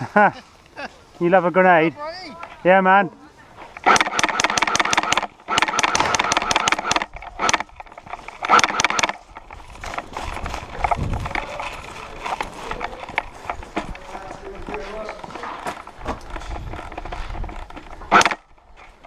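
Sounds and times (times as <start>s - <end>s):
rustling: 3.4s - 19.0s
airsoft gun firing bursts: 3.8s - 9.3s
scattered knocks: 3.8s - 11.4s.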